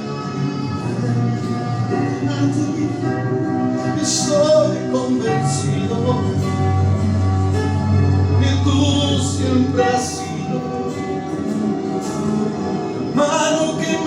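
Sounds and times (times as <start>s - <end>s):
worship music: 0.0s - 14.0s.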